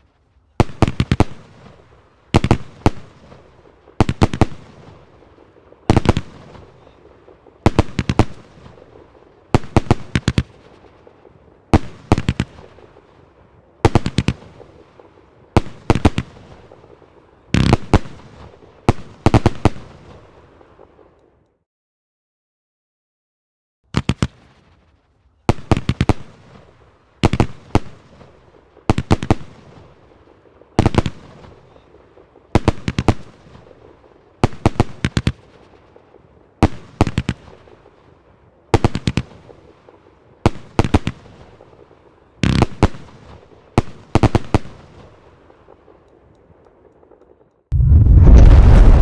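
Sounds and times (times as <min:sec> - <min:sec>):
firework bangs with echo: 0:47.7 - 0:49.0.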